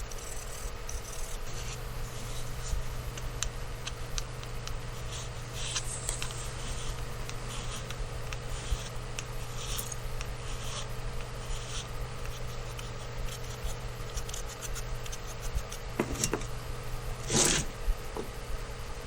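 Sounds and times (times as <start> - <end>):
light scratchy filing strokes: 0.0 - 3.0, 5.0 - 15.8, 17.2 - 17.8
steady low hum: 0.0 - 19.0
short loud scrape: 17.2 - 17.7.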